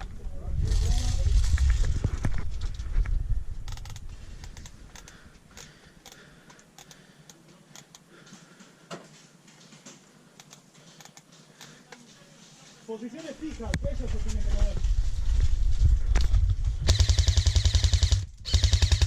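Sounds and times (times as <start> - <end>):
low rumble on microphone: 0.0 - 4.4, 13.6 - 16.9
sharp clicks: 3.6 - 8.1, 10.4 - 11.7.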